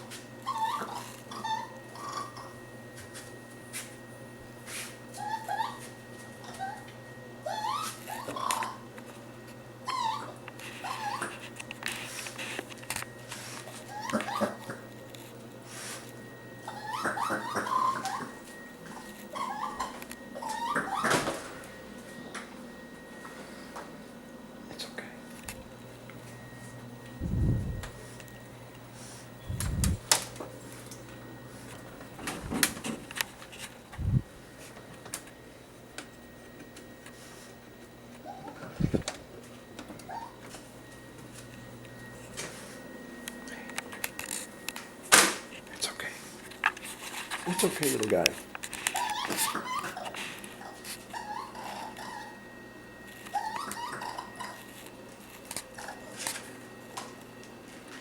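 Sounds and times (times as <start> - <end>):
young raccoon crying: 0.4 - 2.6, 5.2 - 8.9, 9.8 - 11.4, 13.8 - 14.8, 16.6 - 18.4, 19.3 - 21.4, 38.2 - 39.1, 40.0 - 40.4, 47.4 - 47.9, 48.9 - 52.4, 53.3 - 54.7.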